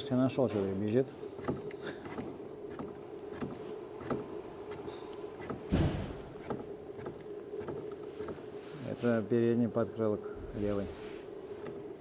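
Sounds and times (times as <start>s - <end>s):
heavy thump: 5.7s - 6.6s.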